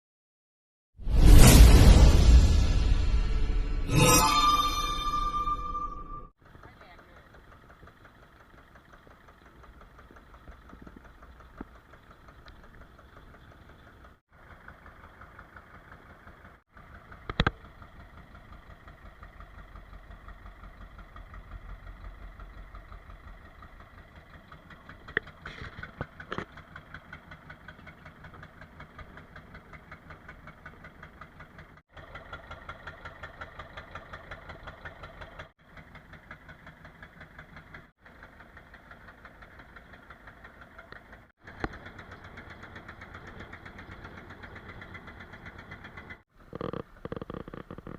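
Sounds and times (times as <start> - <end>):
boat engine chugging: 6.4 - 47.9.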